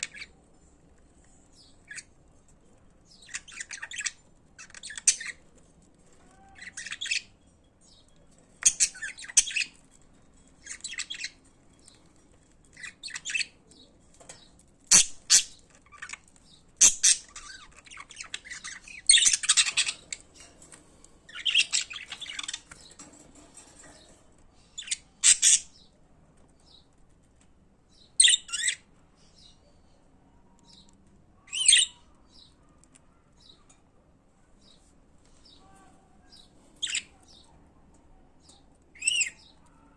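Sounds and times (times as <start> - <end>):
budgerigars chattering: 16.8 - 20.2.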